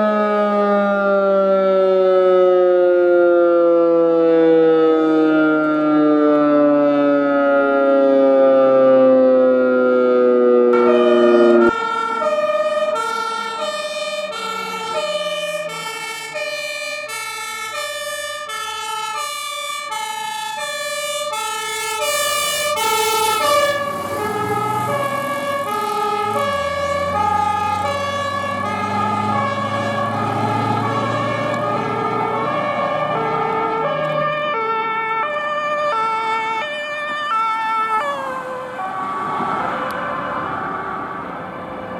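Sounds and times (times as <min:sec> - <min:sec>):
fire engine two-tone horn: 0:00.0 - 0:41.9
siren winding down: 0:00.0 - 0:41.9
truck engine rumbling: 0:10.4 - 0:18.6, 0:21.7 - 0:41.9.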